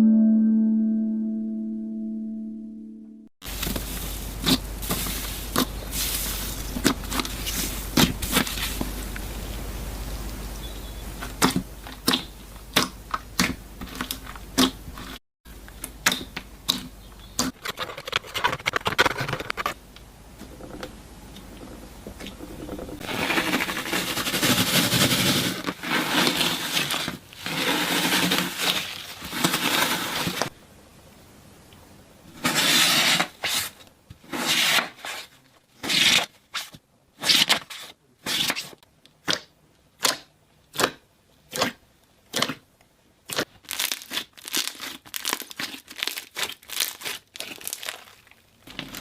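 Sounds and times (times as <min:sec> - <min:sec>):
crunchy slime crackling: 0:43.2 - 0:49.0.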